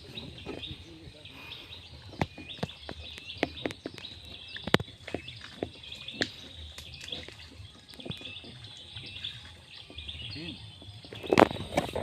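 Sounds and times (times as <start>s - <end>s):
birds or insects chirping: 0.0s - 12.0s.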